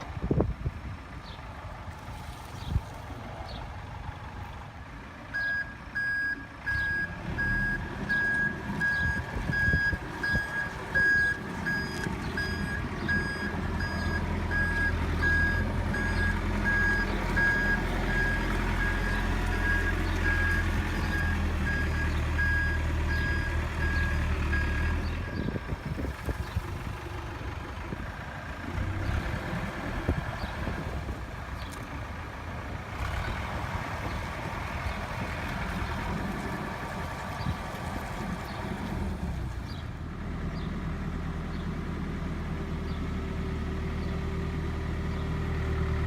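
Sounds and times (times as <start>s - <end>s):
diesel engine running: 0.0s - 46.0s
reversing alarm beeping: 5.3s - 25.4s.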